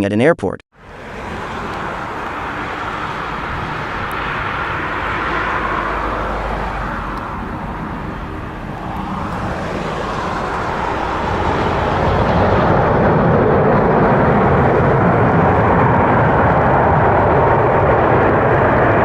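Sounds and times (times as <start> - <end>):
jet engines and spray rushing: 0.8 - 19.0.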